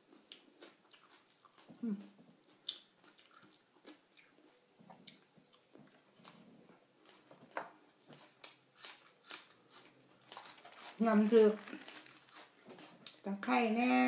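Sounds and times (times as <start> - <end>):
chewing mouth sounds: 0.1 - 11.0.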